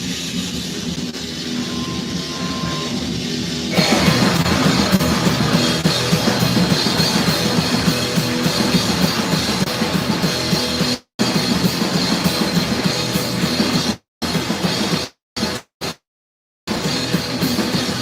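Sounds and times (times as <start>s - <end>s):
drums: 0.0s - 16.0s, 16.7s - 18.0s
electric guitar: 1.3s - 14.8s, 16.7s - 18.0s
live rock band playing: 3.7s - 15.0s.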